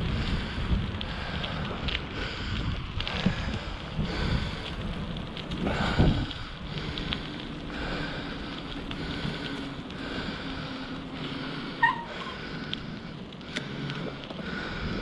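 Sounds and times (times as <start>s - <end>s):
bicycle rolling hum: 0.0s - 15.0s
wind buffeting microphone: 0.0s - 15.0s
high squeak: 11.8s - 12.3s.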